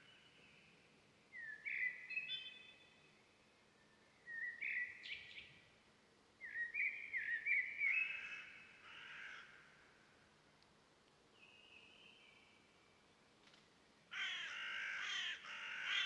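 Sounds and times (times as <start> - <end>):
faint outdoor ambience: 0.0 - 16.0.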